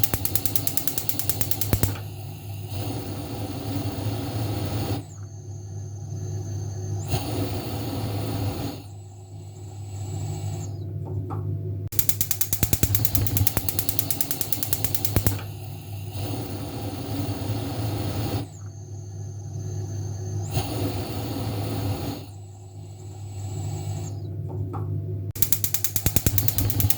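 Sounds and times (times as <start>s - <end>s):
gas stove igniter clicking: 0.0s - 4.9s, 11.9s - 18.3s, 25.4s - 26.9s
stove hissing: 0.0s - 10.7s, 11.9s - 24.2s, 25.4s - 26.9s.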